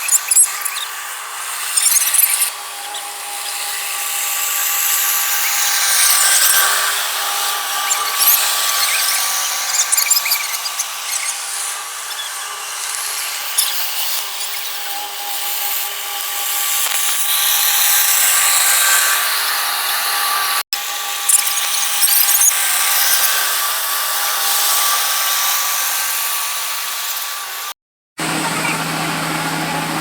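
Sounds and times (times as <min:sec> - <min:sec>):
short high squeaks: 0:00.0 - 0:19.2, 0:21.2 - 0:23.5
combine harvester machinery whine: 0:00.1 - 0:25.6, 0:27.4 - 0:30.0.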